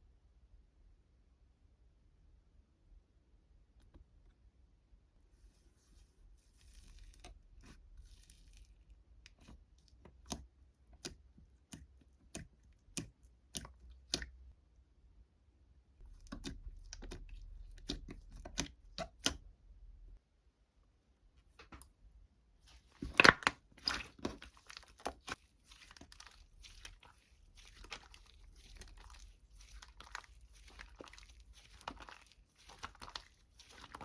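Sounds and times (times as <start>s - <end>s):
close-up rustling: 22.6s - 34.0s.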